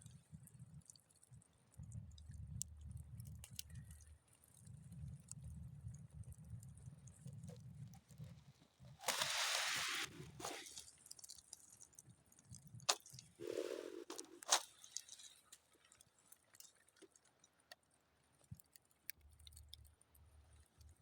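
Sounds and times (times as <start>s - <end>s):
campfire crackling: 13.4s - 14.6s.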